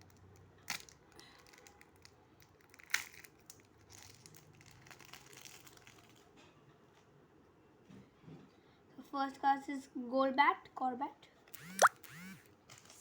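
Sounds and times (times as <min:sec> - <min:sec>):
wrapper tearing open: 0:00.7 - 0:06.2
wrapper crinkling: 0:00.7 - 0:06.3.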